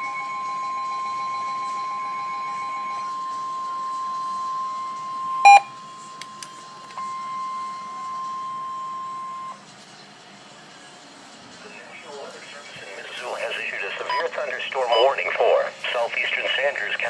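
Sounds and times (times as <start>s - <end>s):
loud short beep: 5.4s - 5.7s
high electronic alert tone: 5.5s - 5.7s.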